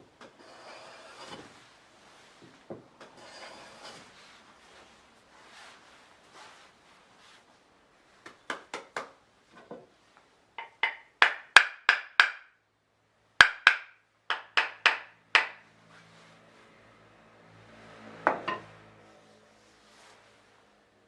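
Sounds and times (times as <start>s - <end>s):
hammer tapping wooden plane: 10.6s - 12.6s, 13.4s - 15.6s.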